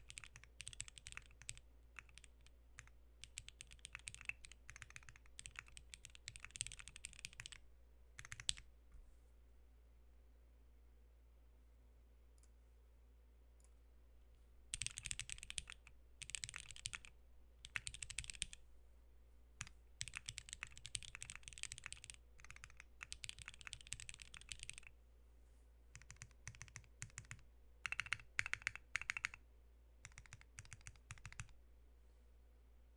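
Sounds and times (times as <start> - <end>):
mechanical keyboard typing: 0.0 - 7.6, 8.2 - 8.6, 14.8 - 18.6, 20.0 - 24.9, 26.0 - 29.4, 30.0 - 31.5.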